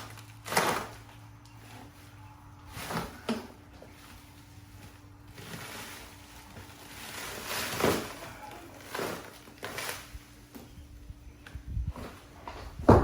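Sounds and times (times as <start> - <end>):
packing material knocks and scrapes: 0.0 - 10.1
wrap and cardboard rustling: 0.0 - 10.8.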